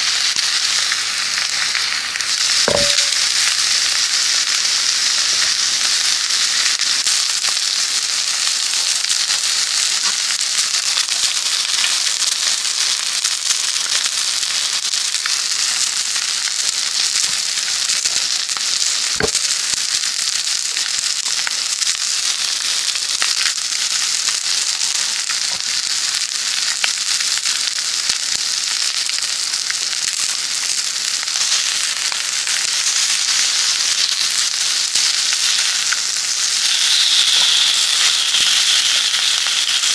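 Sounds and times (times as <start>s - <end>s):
food sizzling with crackles: 0.0s - 39.9s
brief clink: 2.7s - 3.1s.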